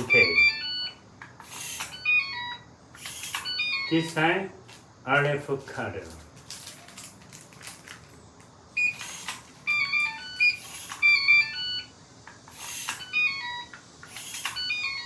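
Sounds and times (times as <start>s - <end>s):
door lock electronic beep melody: 0.0s - 1.0s, 3.4s - 4.1s, 8.8s - 11.9s, 13.0s - 13.7s.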